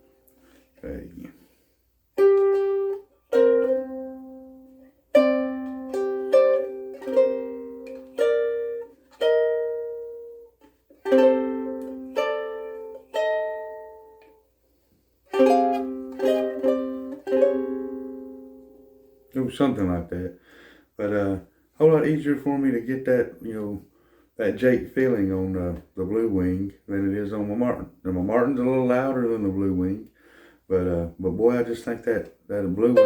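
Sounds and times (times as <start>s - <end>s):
ukulele plucked notes and chords: 2.2s - 14.4s, 15.3s - 19.4s, 32.6s - 33.0s.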